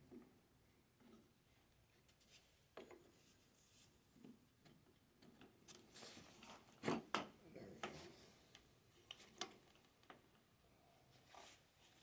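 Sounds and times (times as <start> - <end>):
faint clicks and taps: 7.1 - 10.5.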